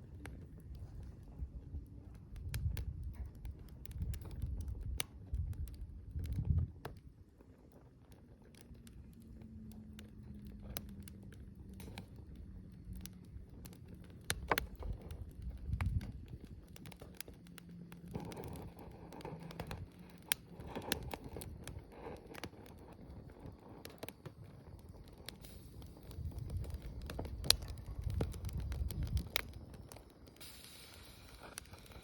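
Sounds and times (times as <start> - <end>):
wood fire crackling: 0.0 - 32.0.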